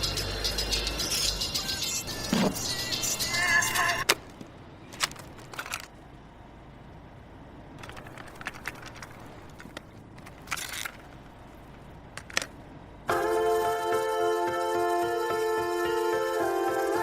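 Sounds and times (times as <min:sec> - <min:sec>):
faint clicks and crackles: 0:07.8 - 0:12.6
music with sustained chords: 0:13.1 - 0:17.0.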